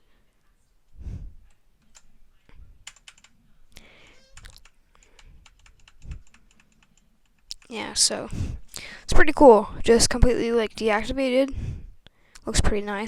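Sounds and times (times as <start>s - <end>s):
mechanical keyboard clicks: 2.8s - 3.3s, 4.4s - 7.7s.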